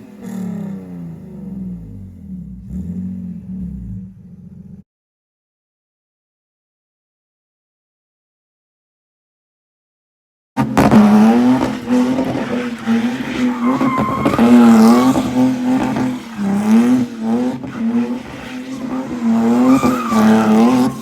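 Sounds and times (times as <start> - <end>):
car engine at high revs: 0.0 - 4.8, 10.6 - 21.0
tyres squealing: 10.8 - 21.0.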